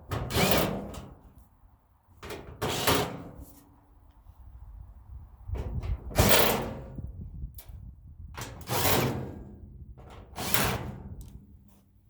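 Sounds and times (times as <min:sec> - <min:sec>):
sheet metal scraping and clanking: 0:08.4 - 0:11.2.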